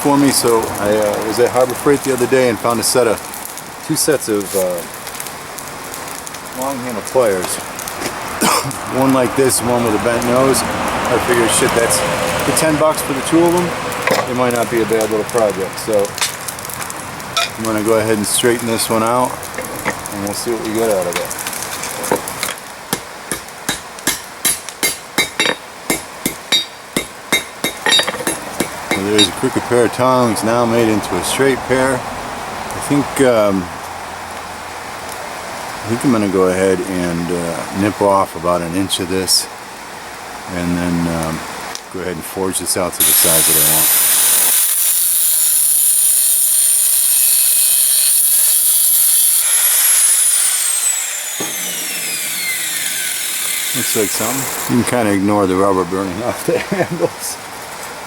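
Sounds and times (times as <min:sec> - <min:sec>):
hammer striking steel: 0:23.0 - 0:29.4
grinder cutting steel: 0:23.3 - 0:29.4, 0:43.0 - 0:55.0
grinder wheel winding down: 0:43.0 - 0:54.9.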